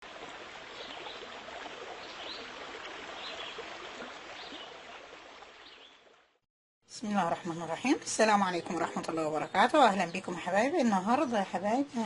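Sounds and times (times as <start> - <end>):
running water rushing: 0.0 - 6.4.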